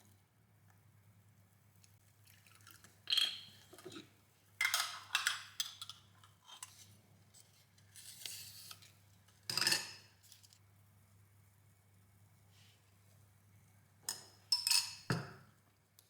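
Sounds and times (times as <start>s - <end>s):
utensils and dishes clattering: 3.1s - 6.8s.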